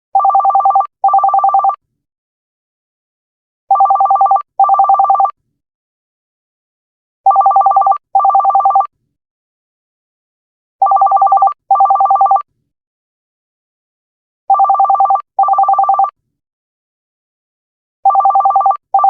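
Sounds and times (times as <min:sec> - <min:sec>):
electronic telephone ringtone trill: 0:00.2 - 0:01.8, 0:03.7 - 0:05.3, 0:07.3 - 0:08.8, 0:10.8 - 0:12.4, 0:14.5 - 0:16.1, 0:18.1 - 0:19.0.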